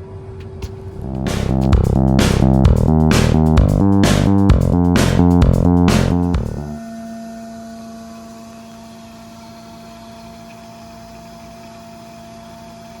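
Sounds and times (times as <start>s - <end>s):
steady hum: 0.8s - 7.0s
music with bass and drums: 1.0s - 6.8s.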